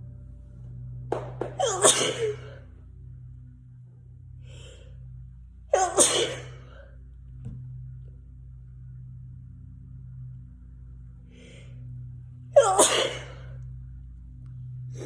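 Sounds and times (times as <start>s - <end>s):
person sneezing: 1.6s - 2.6s, 5.8s - 6.6s, 12.6s - 13.4s.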